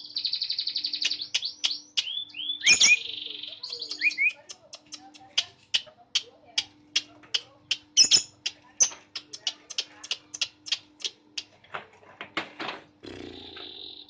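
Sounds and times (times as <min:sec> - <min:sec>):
lovebird chirping: 0:00.0 - 0:11.2.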